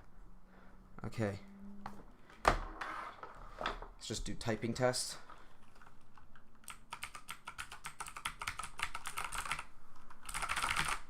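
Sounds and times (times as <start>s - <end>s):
fast typing on mechanical keyboard: 5.6s - 11.0s.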